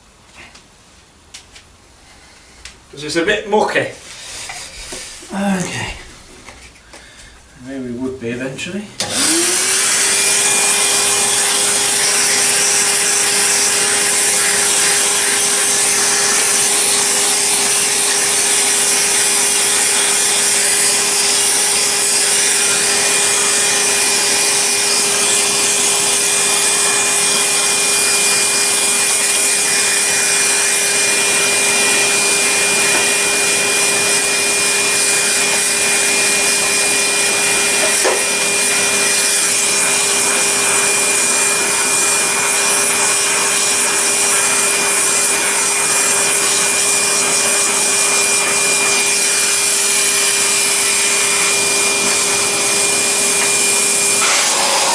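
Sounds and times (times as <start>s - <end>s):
vacuum cleaner motor running: 9.0s - 54.9s
high hiss of suction: 50.7s - 54.9s.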